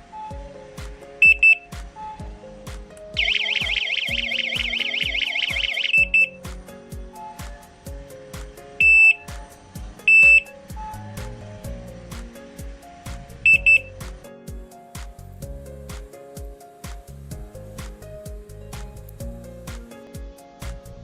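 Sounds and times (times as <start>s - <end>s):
background music: 0.0s - 21.0s
electronic beeps: 1.2s - 1.6s, 3.2s - 6.4s, 8.8s - 9.2s, 10.1s - 10.5s, 13.5s - 13.9s
electronic alarm siren warbling: 3.2s - 6.4s.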